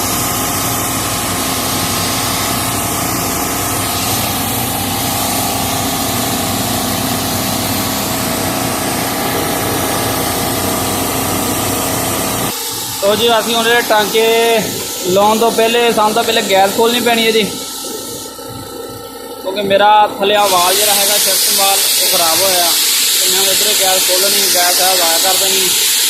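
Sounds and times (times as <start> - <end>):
hiss: 0.0 - 11.1, 20.4 - 26.0
refrigeration unit humming: 0.0 - 26.0.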